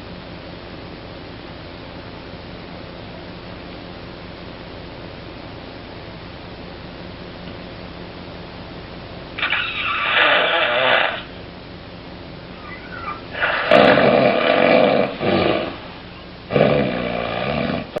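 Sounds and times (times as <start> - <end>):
person snoring: 9.4 - 11.3, 13.0 - 15.9, 16.5 - 18.0.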